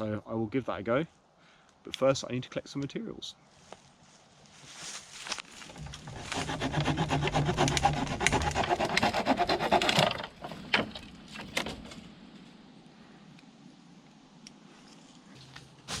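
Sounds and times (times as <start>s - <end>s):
small saw cutting wood: 5.7s - 10.5s.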